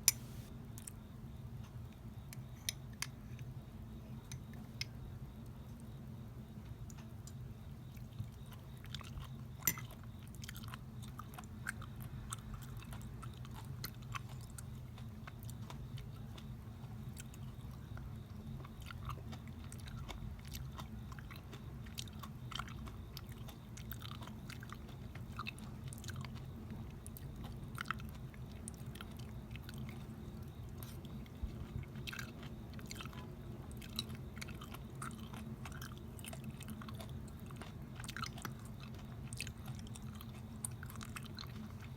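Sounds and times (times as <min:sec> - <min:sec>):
person chewing: 0:18.6 - 0:41.9.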